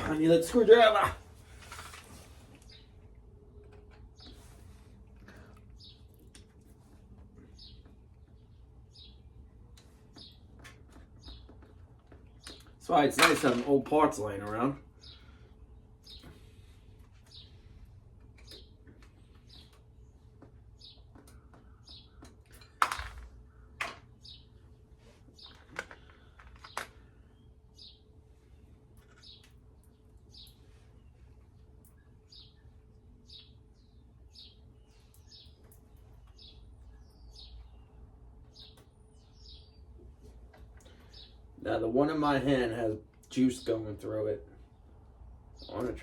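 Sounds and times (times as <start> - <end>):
small bird chirping: 7.4 - 12.8, 15.0 - 22.8, 25.3 - 41.4.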